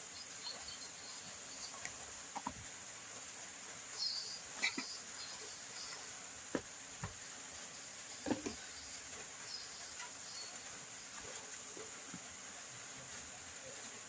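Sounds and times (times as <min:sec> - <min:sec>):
steady hiss: 0:00.0 - 0:14.0
faint knocks and taps: 0:02.3 - 0:02.7, 0:06.5 - 0:07.2.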